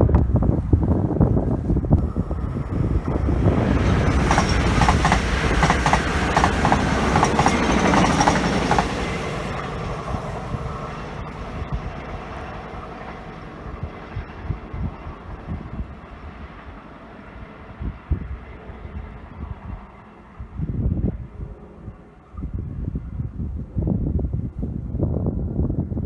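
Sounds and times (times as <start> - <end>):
train wheels clicking over rail joints: 3.6 - 10.4.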